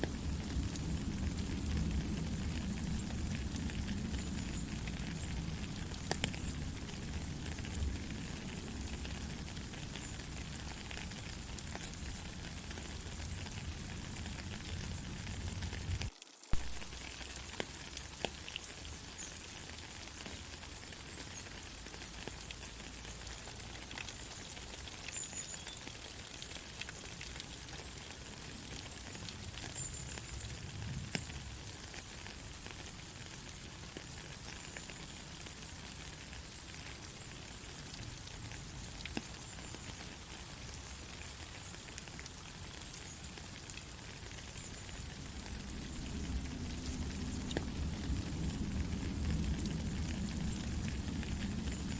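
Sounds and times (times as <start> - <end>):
faint drip ticks: 0.0 - 51.9
steady rain hiss: 0.0 - 51.9
low rumble: 45.1 - 51.9.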